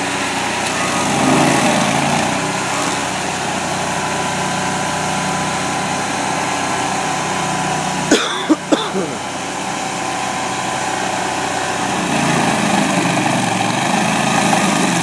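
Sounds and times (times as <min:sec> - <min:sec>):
small gasoline engine running: 0:00.0 - 0:15.0.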